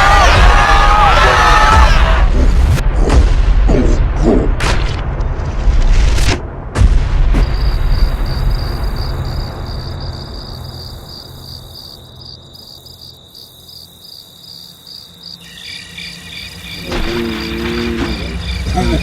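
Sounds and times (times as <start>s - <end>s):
low rumbling boom: 0.3s - 11.0s
cricket chirping: 7.4s - 19.0s.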